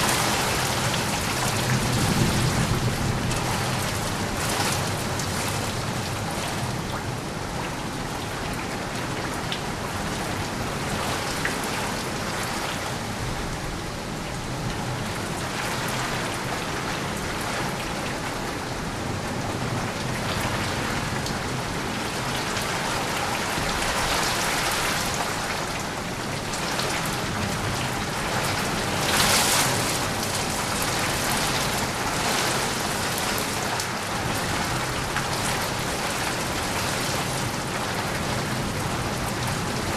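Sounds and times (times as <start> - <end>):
rain pattering on surfaces: 0.0 - 39.9.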